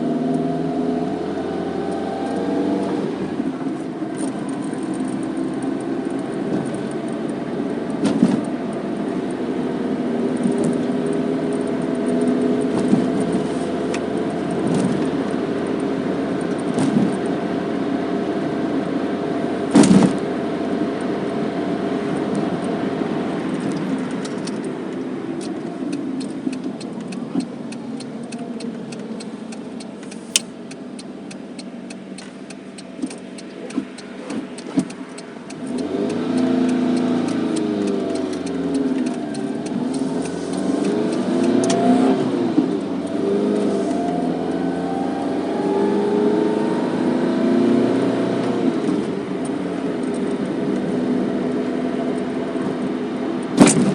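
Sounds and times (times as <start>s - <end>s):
car engine and road noise: 0.0s - 53.9s
turn signal ticking: 1.5s - 17.3s, 23.4s - 46.1s.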